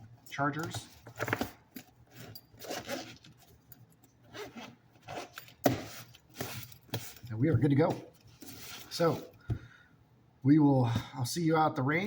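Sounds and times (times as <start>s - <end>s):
gear rubbing and scraping in case: 0.6s - 9.3s.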